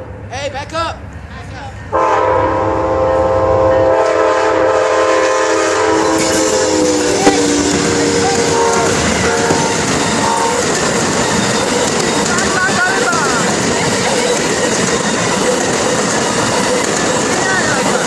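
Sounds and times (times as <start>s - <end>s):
passing train noise: 0.0s - 18.0s
locomotive air horn: 1.9s - 10.7s.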